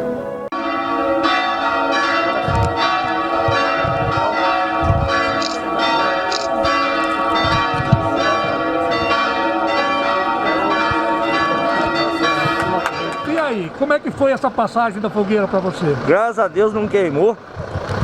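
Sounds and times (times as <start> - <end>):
church bells ringing: 0.0 - 17.4
low thumps: 2.4 - 9.4.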